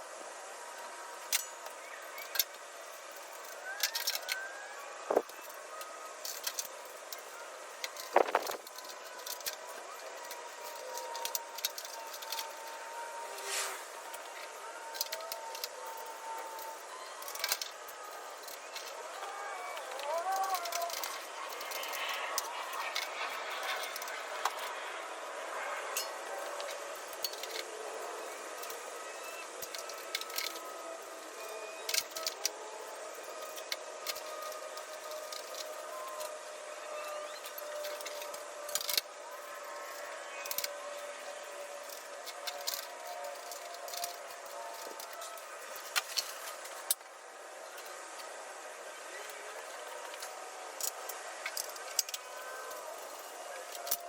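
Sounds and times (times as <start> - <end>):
steady background hiss: 0.0 - 54.0
metal parts clinking: 5.1 - 12.9, 14.1 - 24.7, 26.0 - 36.3, 37.0 - 46.9.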